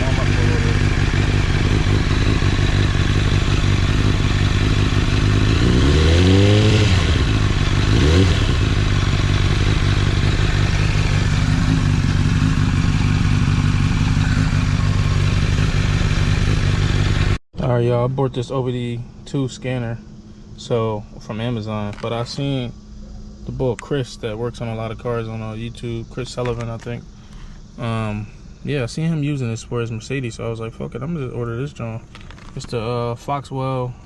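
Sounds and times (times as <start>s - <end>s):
motorcycle engine revving: 0.0s - 17.4s
motorcycle engine idling: 0.0s - 34.0s.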